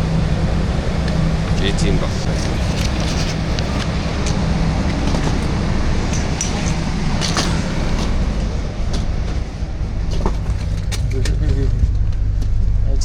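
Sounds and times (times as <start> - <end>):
standing train rumbling: 0.0 - 13.0.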